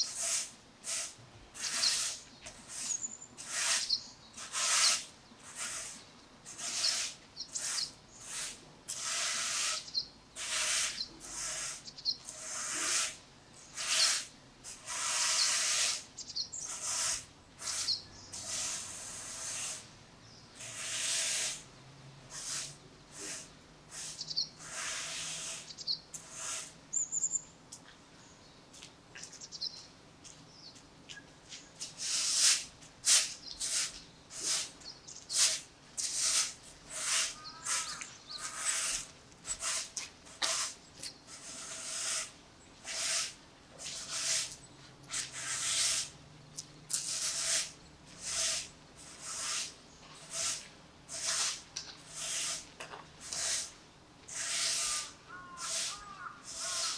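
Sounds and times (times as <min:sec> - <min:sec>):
bird chirps: 0:26.9 - 0:27.5.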